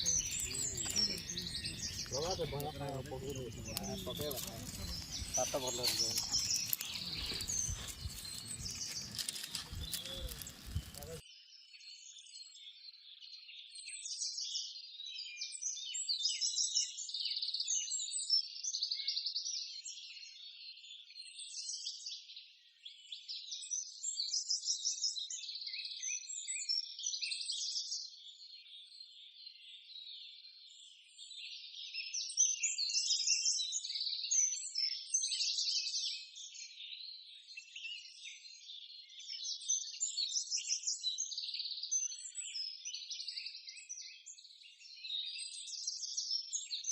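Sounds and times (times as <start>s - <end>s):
birds chirping in chorus: 0.0s - 12.4s.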